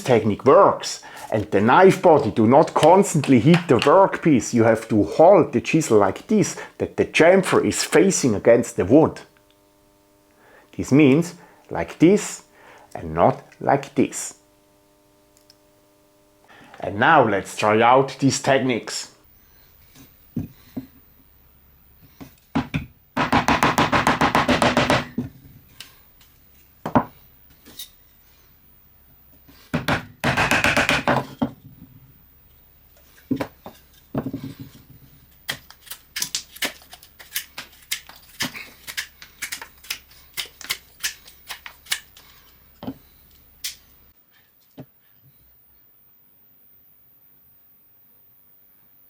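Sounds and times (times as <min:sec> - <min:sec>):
knife scraping wood: 0:33.0 - 0:43.8.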